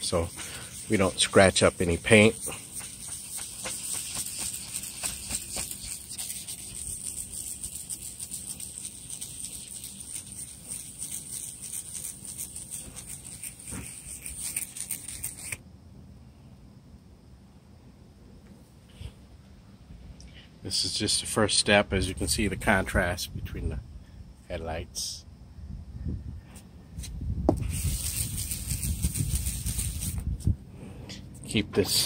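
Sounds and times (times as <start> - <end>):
sanding disc scratching lens: 0.0 - 15.6, 27.7 - 30.2.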